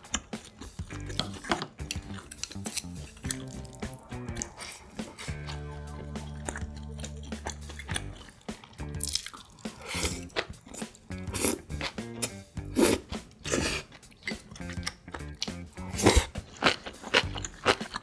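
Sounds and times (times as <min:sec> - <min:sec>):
chewing crunchy food: 0:00.0 - 0:18.0
steady low held tone: 0:03.3 - 0:08.2.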